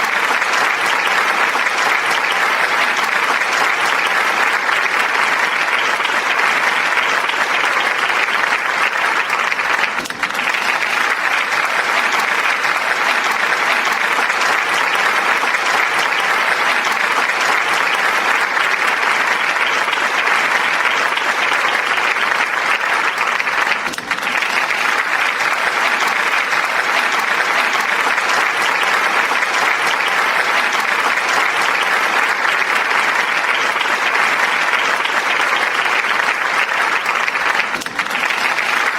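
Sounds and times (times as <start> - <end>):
audience applauding: 0.0 - 38.9.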